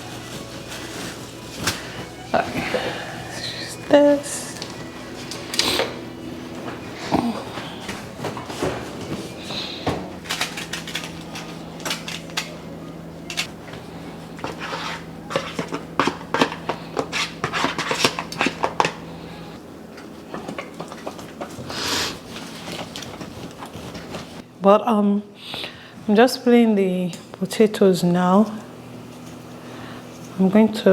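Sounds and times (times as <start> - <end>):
utensils and dishes clattering: 0.0 - 13.5, 14.4 - 19.1
steady low hum: 0.0 - 30.9.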